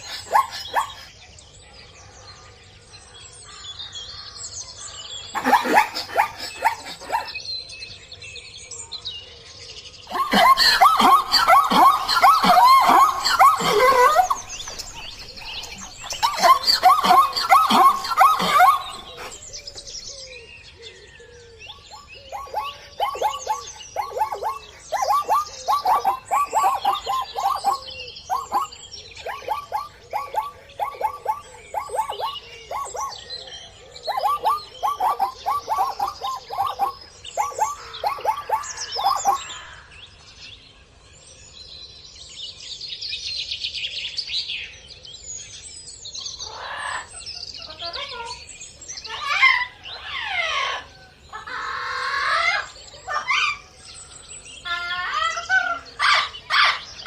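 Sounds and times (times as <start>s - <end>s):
harsh bird squawks: 0.0s - 1.1s, 5.3s - 7.4s, 10.1s - 19.8s, 22.3s - 33.2s, 34.0s - 39.9s, 49.0s - 53.6s
birds chirping: 0.0s - 57.0s.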